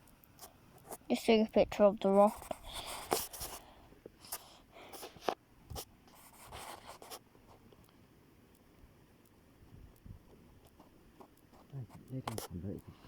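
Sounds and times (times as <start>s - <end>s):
scratchy handling rustles: 2.0s - 7.6s.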